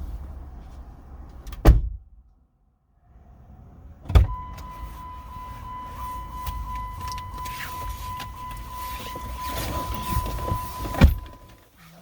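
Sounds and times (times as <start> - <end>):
car door thumping shut: 1.5 - 2.0, 10.4 - 11.4
low car cabin rumble: 3.8 - 12.0.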